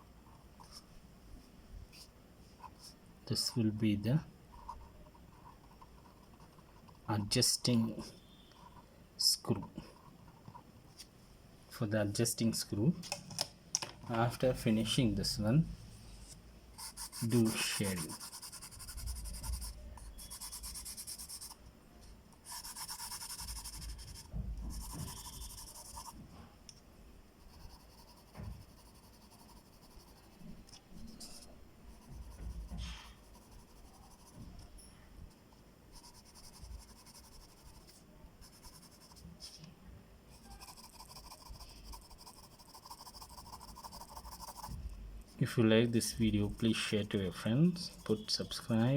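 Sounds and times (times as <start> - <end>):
pencil scratching on paper: 16.8 - 21.6, 22.4 - 26.2, 27.4 - 34.4, 35.9 - 39.2, 40.3 - 48.8.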